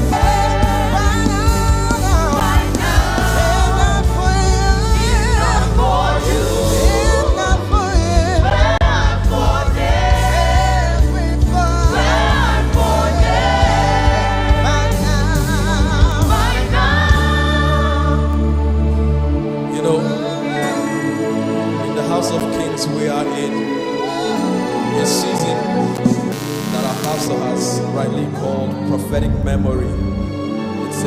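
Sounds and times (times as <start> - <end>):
gospel singing with band: 0.0 - 18.8.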